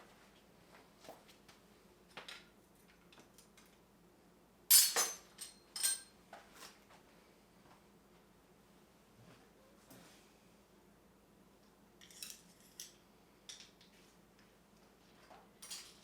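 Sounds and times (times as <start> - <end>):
metal hand tools clinking: 4.7 - 6.1.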